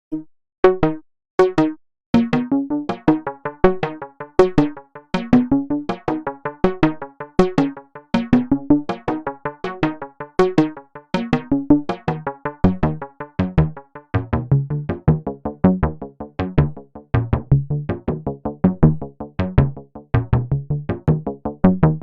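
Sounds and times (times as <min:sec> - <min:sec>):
synthesizer tune: 0:00.1 - 0:13.8
bouncing bass line: 0:00.1 - 0:22.0.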